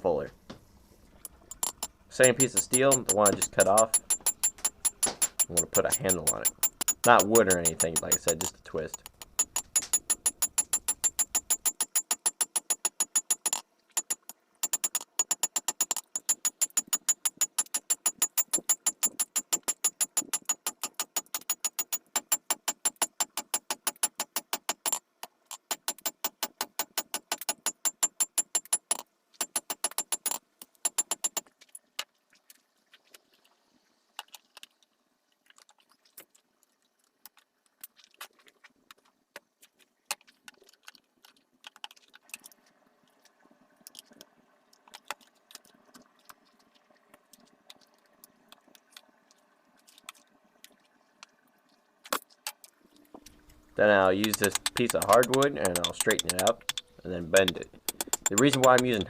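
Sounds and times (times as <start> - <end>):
hammer striking steel on anvil: 1.6 - 8.5, 54.2 - 56.8
light metal taps: 54.2 - 59.0.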